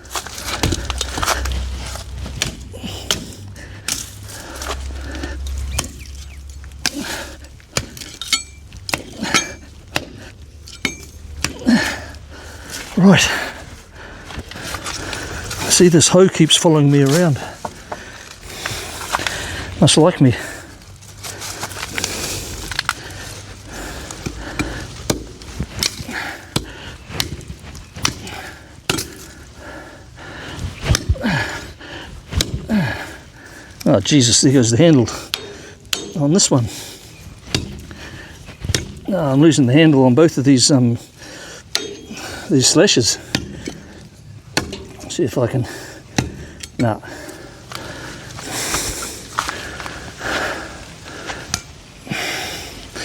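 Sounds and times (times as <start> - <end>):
blade chopping vines and brush: 0.0 - 53.0
person grunting: 11.5 - 12.2, 32.6 - 33.1
metal garden tool knocks: 43.1 - 45.2, 46.1 - 47.0.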